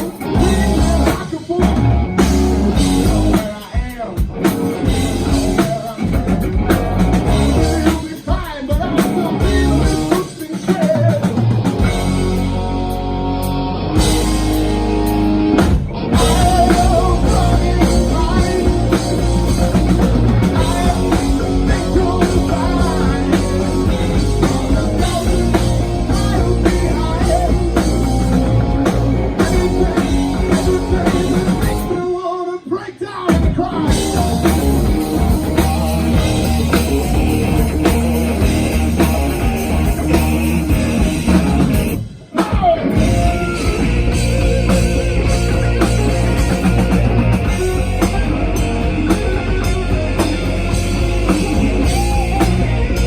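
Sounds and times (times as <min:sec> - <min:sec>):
drum kit: 0:00.0 - 0:32.2, 0:33.2 - 0:53.0
electric guitars: 0:00.0 - 0:53.0
person singing: 0:00.1 - 0:01.9, 0:16.2 - 0:41.7.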